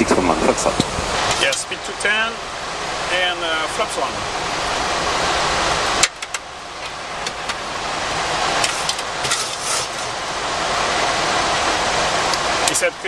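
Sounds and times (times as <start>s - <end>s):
airflow and engines in cockpit: 0.0s - 13.0s.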